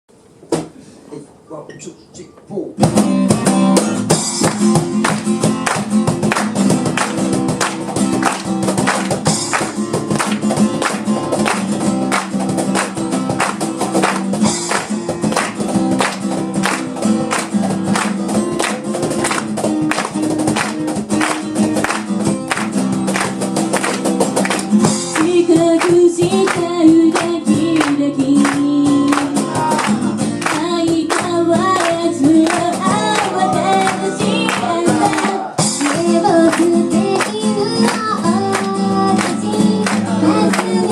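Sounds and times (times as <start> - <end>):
acoustic guitar strumming: 2.8 - 40.9
person singing: 25.2 - 40.9.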